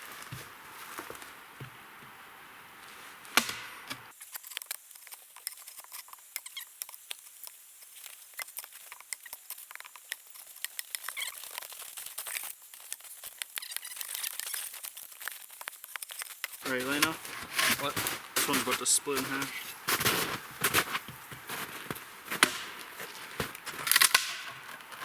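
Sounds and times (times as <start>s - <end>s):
small clicks and crackles: 2.9s - 19.6s, 20.7s - 25.0s.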